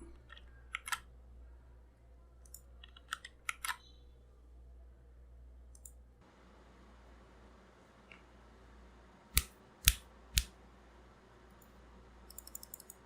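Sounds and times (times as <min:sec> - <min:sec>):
mechanical keyboard clacks: 0:12.3 - 0:13.0.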